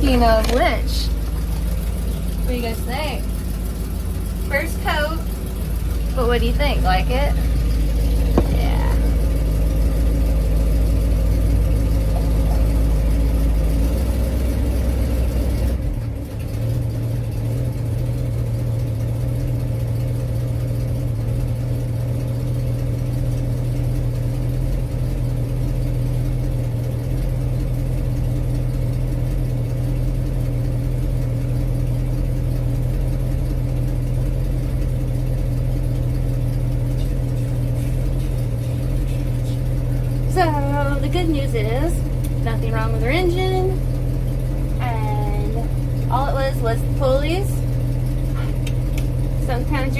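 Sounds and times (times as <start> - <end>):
engine idling: 0.0 - 49.9.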